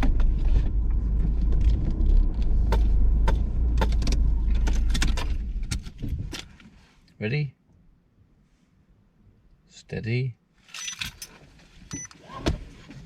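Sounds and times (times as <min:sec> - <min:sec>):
sharp clicks and rattles: 0:00.0 - 0:06.6
vehicle engine low rumble: 0:00.0 - 0:06.8.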